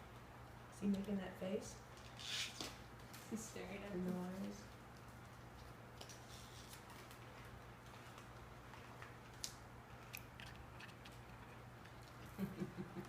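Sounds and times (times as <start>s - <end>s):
low room hum: 0.0s - 13.0s.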